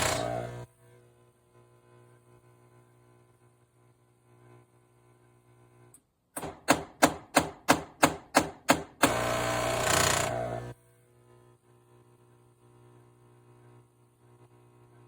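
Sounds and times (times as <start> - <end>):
espresso machine loud buzz: 0.0 - 1.0, 9.0 - 10.9
sharp mechanical knocks: 6.4 - 9.2.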